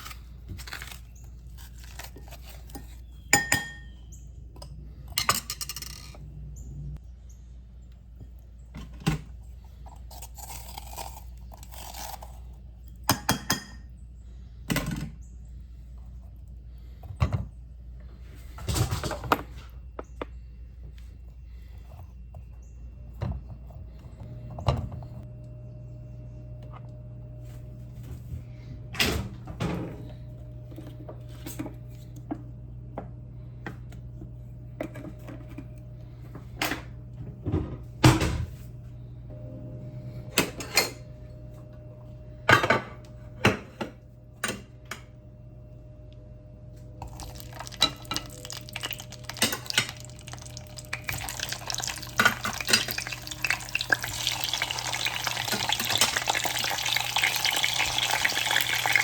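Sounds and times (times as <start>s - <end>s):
pan sizzling: 47.0s - 59.0s
utensils and dishes clinking: 47.0s - 59.0s.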